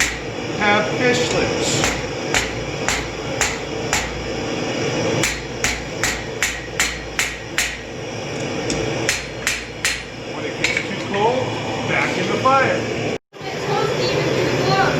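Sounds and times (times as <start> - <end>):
hammer ringing on anvil: 0.0 - 0.6, 1.2 - 4.3, 5.2 - 8.0, 9.1 - 10.8
low background hum: 0.0 - 14.9.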